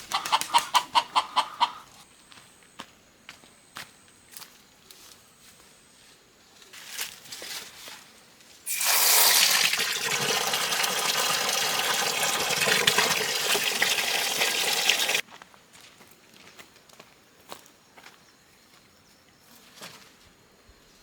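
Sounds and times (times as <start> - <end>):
water gushing: 8.7 - 15.2.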